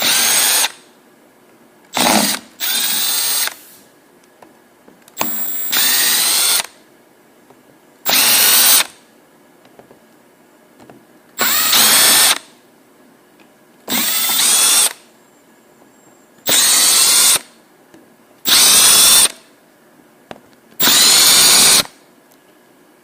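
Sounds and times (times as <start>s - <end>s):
cordless drill motor whine: 0.0s - 0.8s, 1.9s - 3.6s, 5.2s - 6.8s, 8.1s - 8.9s, 11.4s - 12.4s, 13.9s - 15.0s, 16.5s - 17.5s, 18.5s - 19.4s, 20.8s - 21.9s.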